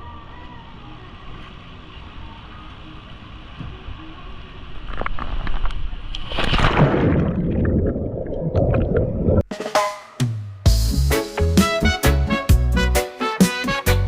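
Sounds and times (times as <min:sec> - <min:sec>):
music: 0:09.5 - 0:14.0.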